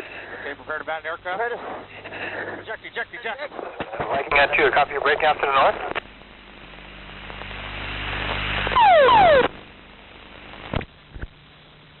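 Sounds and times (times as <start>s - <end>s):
loud blast with falling tones: 8.8s - 9.5s.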